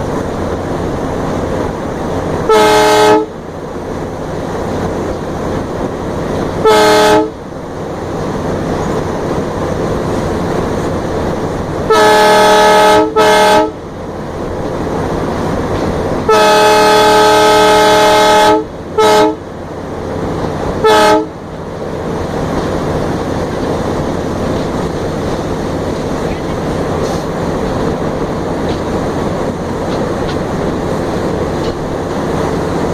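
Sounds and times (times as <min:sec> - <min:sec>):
locomotive running noise: 0:00.0 - 0:32.9
locomotive horn blasts: 0:02.4 - 0:03.3, 0:06.6 - 0:07.4, 0:11.8 - 0:13.8, 0:16.3 - 0:19.4, 0:20.8 - 0:21.4.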